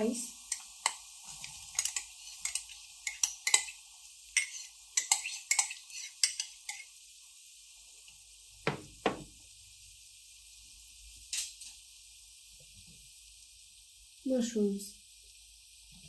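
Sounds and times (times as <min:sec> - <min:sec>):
spoon scraping a cooking pan: 0:00.4 - 0:07.0
heavy knocks: 0:08.7 - 0:09.3.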